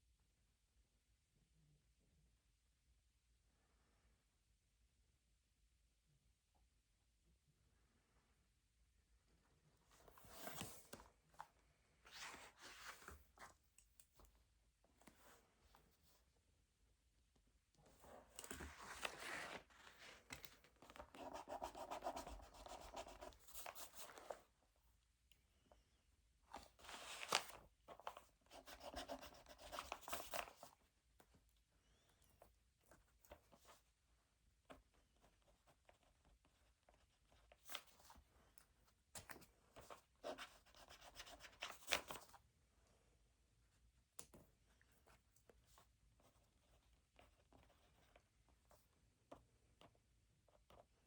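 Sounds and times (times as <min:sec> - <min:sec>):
pencil writing on paper: 0:21.2 - 0:23.3.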